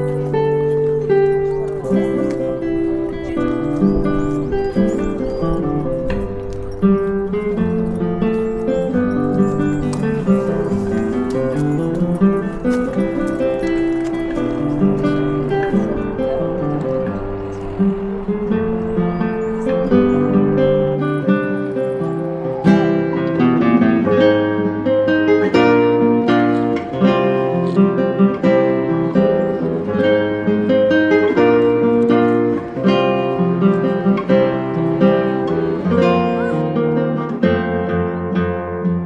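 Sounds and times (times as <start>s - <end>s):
acoustic guitar picking and strumming: 0.0s - 39.0s.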